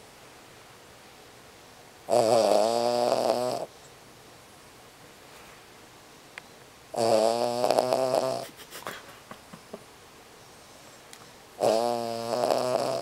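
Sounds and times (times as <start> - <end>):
dog snoring: 2.1 - 3.7, 6.9 - 8.5, 11.6 - 13.0.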